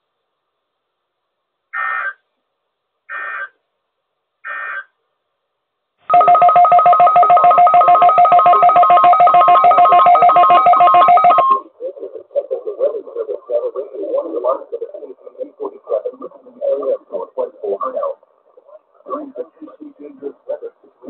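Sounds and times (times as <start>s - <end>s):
digital data tone bursts: 6.1s - 11.6s
pulsing two-tone warning alarm: 6.1s - 11.6s.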